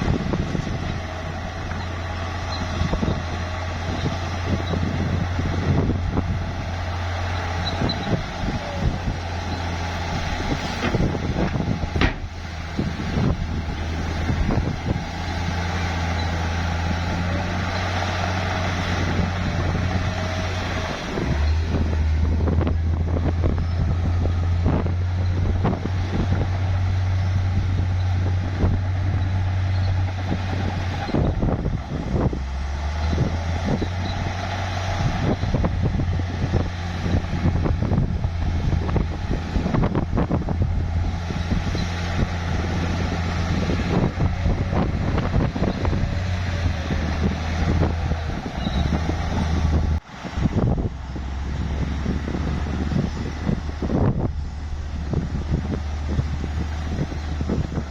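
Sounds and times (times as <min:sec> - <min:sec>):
bulldozer diesel engine: 0:00.0 - 0:57.9
machine clanks and knocks: 0:10.8 - 0:12.3.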